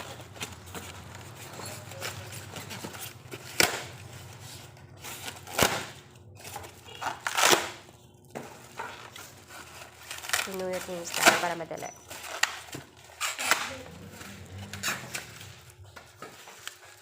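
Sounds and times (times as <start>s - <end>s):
scraping rustle: 12.0s - 17.0s.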